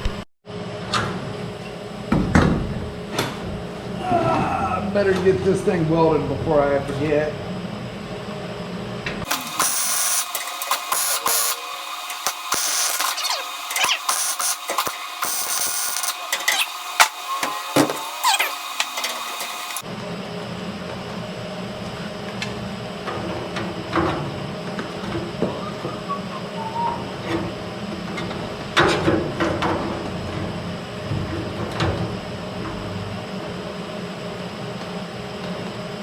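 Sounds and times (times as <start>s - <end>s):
welder crackling hiss: 9.3s - 19.8s.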